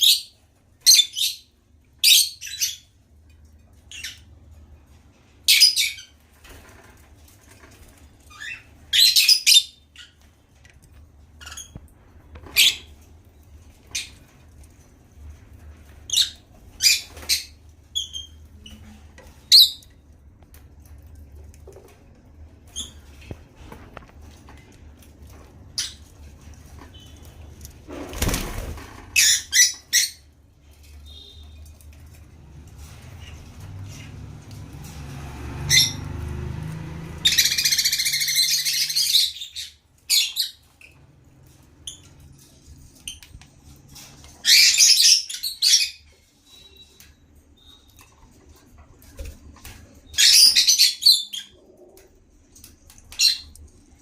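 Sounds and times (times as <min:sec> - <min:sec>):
lovebirds chirping: 0:37.2 - 0:41.0.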